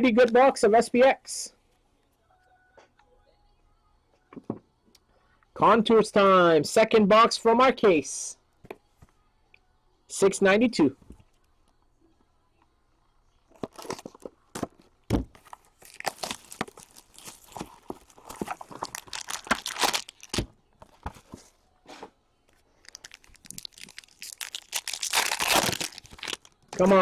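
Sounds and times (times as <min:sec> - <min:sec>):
wrapper crinkling and rustling: 0:13.5 - 0:14.4, 0:15.4 - 0:21.4, 0:22.8 - 0:27.0
wrapping being torn open: 0:15.4 - 0:20.5, 0:22.8 - 0:26.8.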